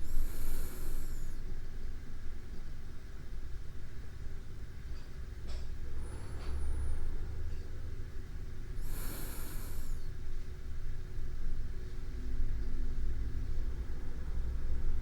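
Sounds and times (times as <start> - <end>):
person breathing softly: 0.0 - 1.4, 8.8 - 10.2.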